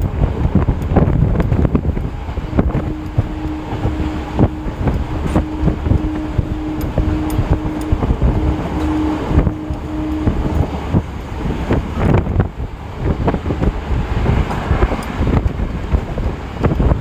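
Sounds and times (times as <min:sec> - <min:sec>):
steady hum: 0:00.0 - 0:14.3
train rumble: 0:00.0 - 0:17.0
wind rushing: 0:00.0 - 0:17.0
train wheels clattering over rail joints: 0:11.6 - 0:17.0.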